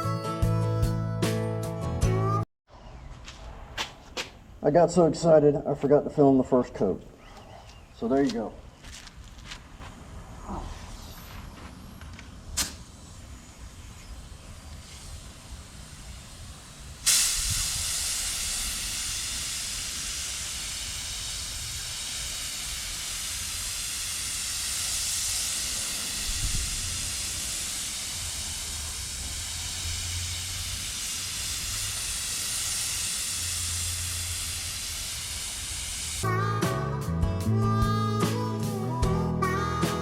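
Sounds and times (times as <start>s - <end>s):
paint spray gun hissing: 13.1s - 36.3s.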